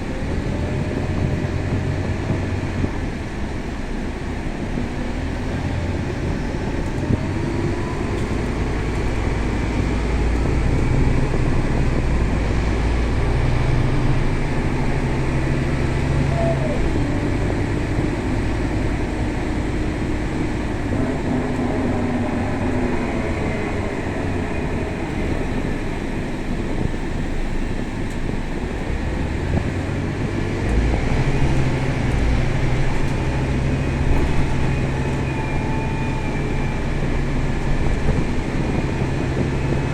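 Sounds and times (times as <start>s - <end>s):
bus diesel engine: 0.0s - 39.9s
road noise: 0.0s - 39.9s.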